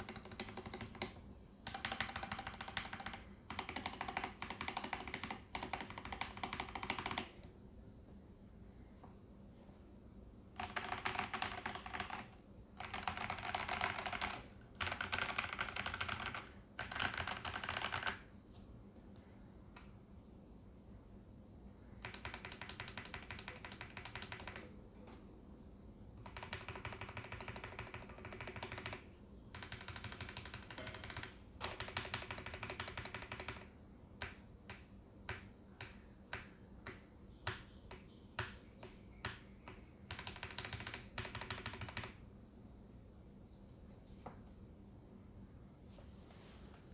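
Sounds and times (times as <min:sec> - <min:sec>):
mechanical keyboard typing: 0:00.0 - 0:07.4, 0:10.6 - 0:18.3, 0:22.0 - 0:24.7, 0:26.2 - 0:42.2.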